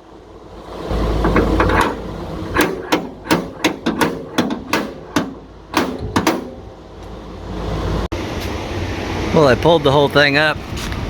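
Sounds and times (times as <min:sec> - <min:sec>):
hammer knocks on sheet metal: 0:01.2 - 0:06.7.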